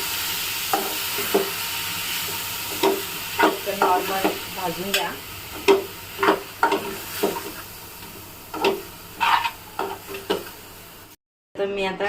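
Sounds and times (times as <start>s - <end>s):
oil sizzling: 0.0s - 11.2s
spatula scraping and knocking a pan: 0.7s - 1.6s, 2.7s - 4.4s, 5.5s - 7.6s, 8.5s - 10.5s.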